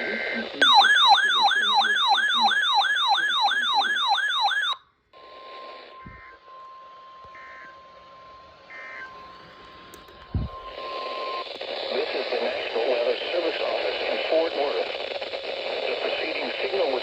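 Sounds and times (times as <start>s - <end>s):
digital tone bursts: 0.6s - 4.8s
warbling siren alarm: 0.6s - 4.8s
radio static: 10.7s - 17.0s.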